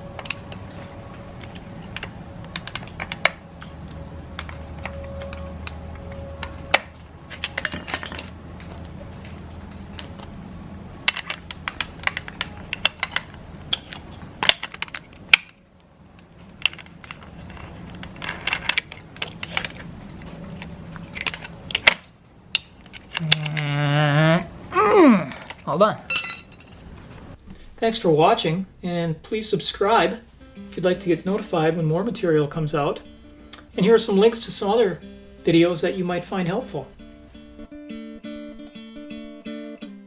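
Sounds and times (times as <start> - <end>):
metallic clicks and clinks: 7.3 - 8.4, 9.9 - 10.3, 16.1 - 23.6.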